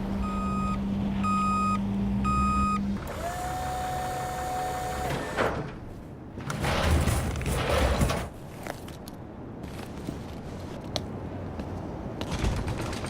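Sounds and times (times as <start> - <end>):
reversing alarm beeping: 0.2 - 5.0.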